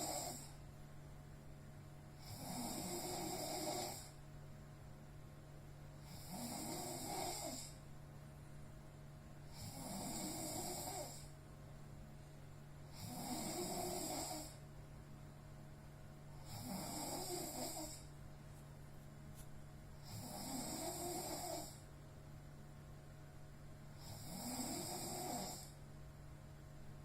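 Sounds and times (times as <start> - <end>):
person snoring heavily: 0.0 - 0.6, 2.2 - 4.2, 6.0 - 7.8, 9.5 - 11.3, 12.9 - 14.6, 16.4 - 18.1, 20.0 - 21.8, 24.0 - 25.8.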